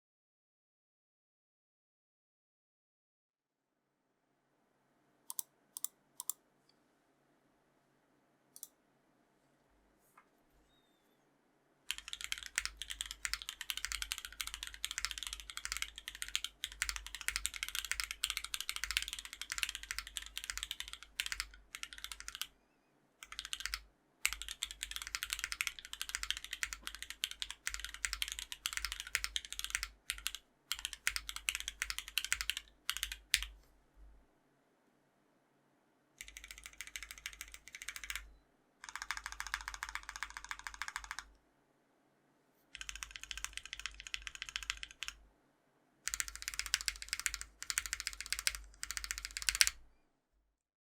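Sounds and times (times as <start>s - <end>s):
mechanical keyboard typing: 5.3s - 6.4s, 11.9s - 22.5s, 23.2s - 33.6s, 36.2s - 41.3s, 42.8s - 45.2s, 46.1s - 49.8s.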